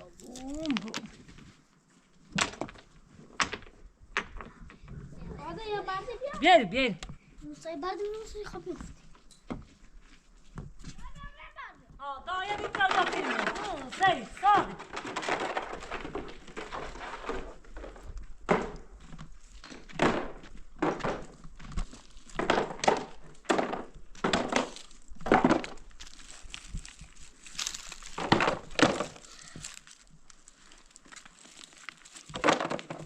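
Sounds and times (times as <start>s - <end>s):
wood knocks and thuds: 2.3s - 5.0s, 12.4s - 27.0s, 27.6s - 29.9s, 32.2s - 33.0s.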